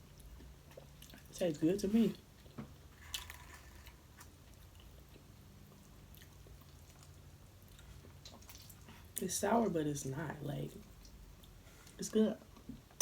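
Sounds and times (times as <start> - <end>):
low steady hum: 0.0 - 13.0
person chewing: 0.1 - 1.3, 2.3 - 9.2.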